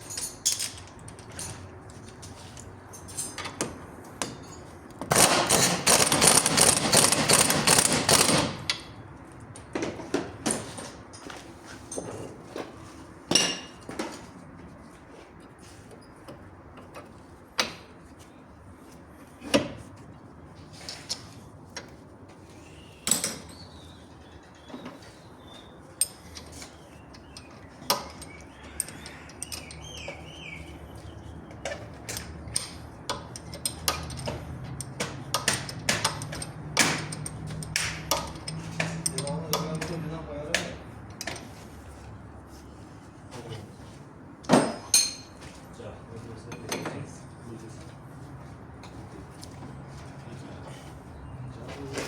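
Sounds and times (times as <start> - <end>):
metal tools clinking on car parts: 0.0 - 9.8, 23.0 - 41.7, 44.4 - 45.6, 46.4 - 47.2.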